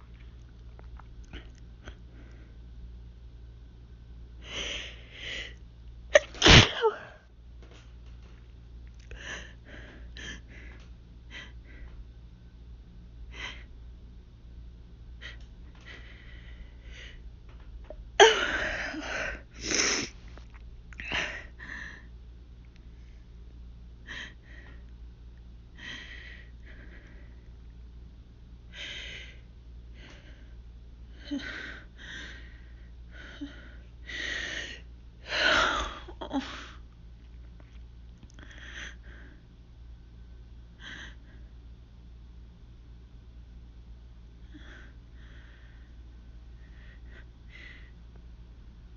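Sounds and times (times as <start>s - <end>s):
woman sneezing: 6.2s - 7.2s.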